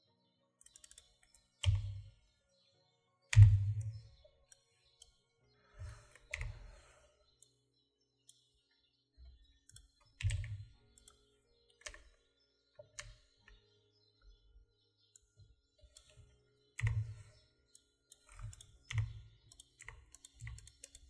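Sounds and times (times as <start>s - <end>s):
keyboard keystrokes: 0.6s - 2.0s, 3.3s - 4.0s, 9.7s - 12.1s, 15.9s - 17.2s, 18.1s - 21.0s
mouse clicks: 3.3s - 5.2s, 5.8s - 6.8s, 9.6s - 12.1s, 15.9s - 21.0s.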